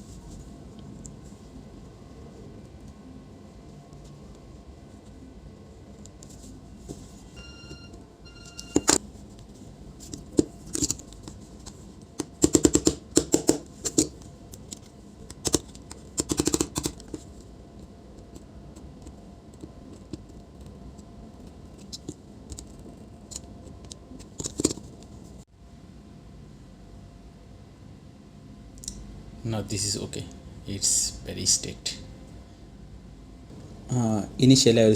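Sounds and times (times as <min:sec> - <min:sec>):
short electronic beeps: 0:07.4 - 0:09.0.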